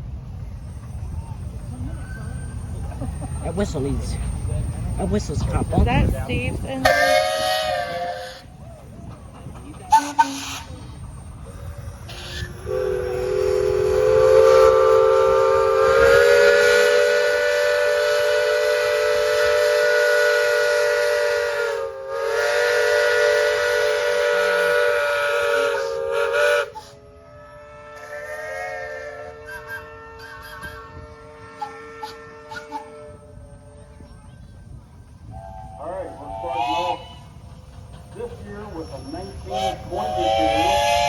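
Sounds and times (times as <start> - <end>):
steam engine whistle blowing: 6.4 - 8.6, 9.9 - 34.1, 38.6 - 41.0.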